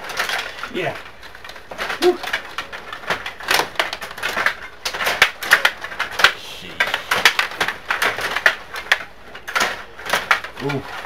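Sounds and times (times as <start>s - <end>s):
table hockey players clacking: 0.0s - 11.0s.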